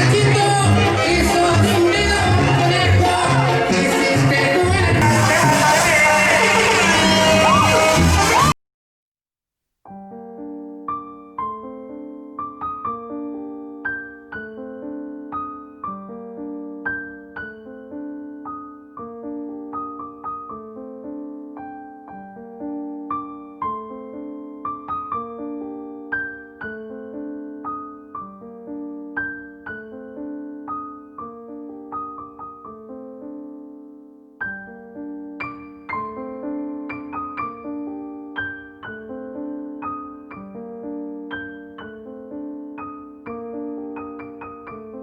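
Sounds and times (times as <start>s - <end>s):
solo piano music: 9.9s - 45.0s.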